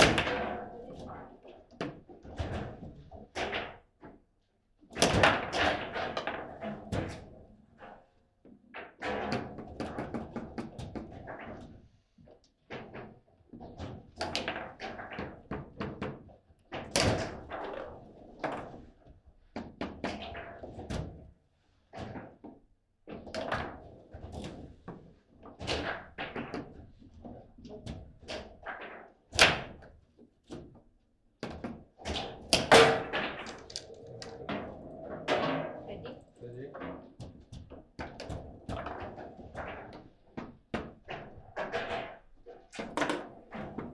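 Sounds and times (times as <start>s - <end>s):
table football ball hits: 32.5s - 34.4s.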